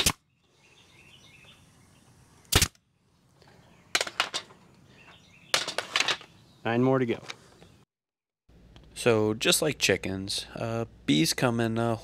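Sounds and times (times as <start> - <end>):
fastener gun shots into wood: 0.0 - 0.2, 2.5 - 2.8.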